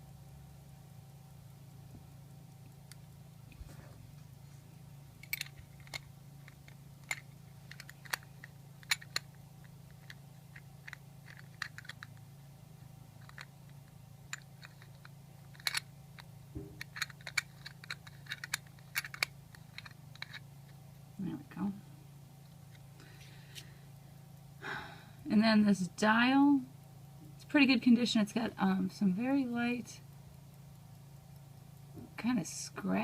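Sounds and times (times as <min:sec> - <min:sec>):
steady low hum: 0:00.0 - 0:33.0
pocket watch case clicking: 0:10.8 - 0:12.2, 0:16.8 - 0:20.4.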